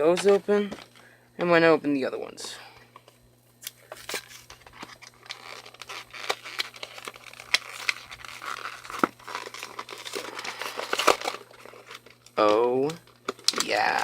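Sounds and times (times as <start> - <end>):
wrappers torn open and crinkled: 4.0 - 14.0.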